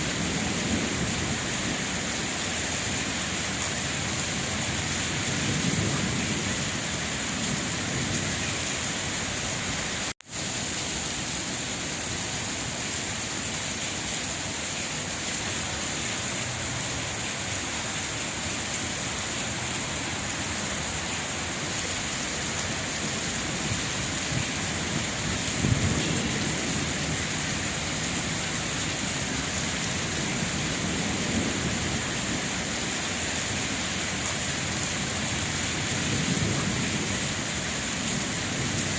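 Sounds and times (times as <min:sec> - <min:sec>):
steady rain falling: 0:00.0 - 0:38.9
low thunder rumbles: 0:04.5 - 0:08.4, 0:23.4 - 0:33.0, 0:35.0 - 0:38.9.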